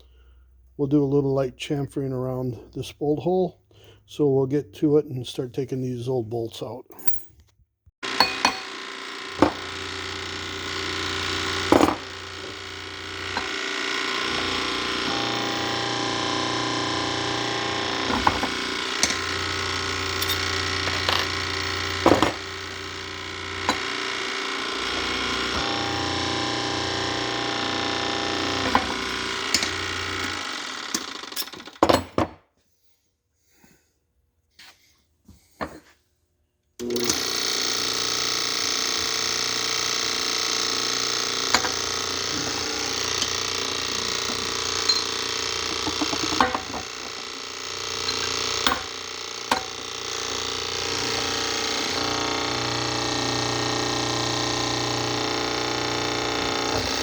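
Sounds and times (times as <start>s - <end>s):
shop machine running: 8.0s - 32.1s, 36.8s - 57.0s.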